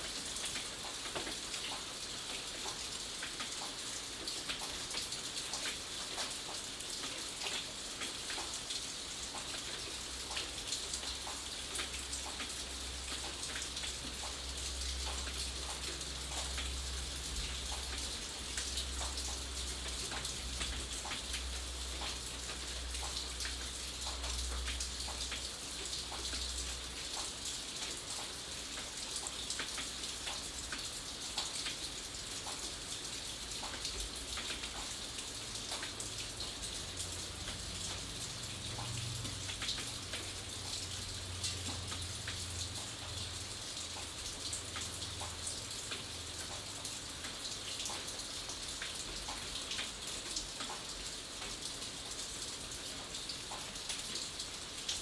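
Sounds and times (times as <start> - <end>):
raindrops pattering: 0.0 - 55.0.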